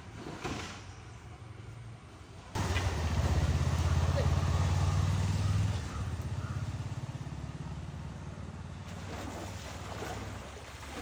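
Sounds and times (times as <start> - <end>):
motor engine running: 2.6 - 10.0.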